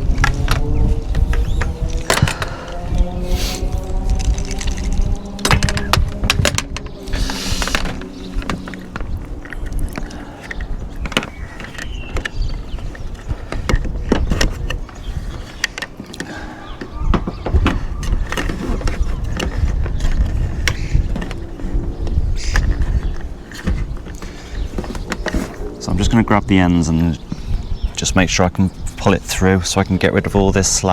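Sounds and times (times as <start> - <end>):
cables clicking and knocking: 0.0 - 26.1.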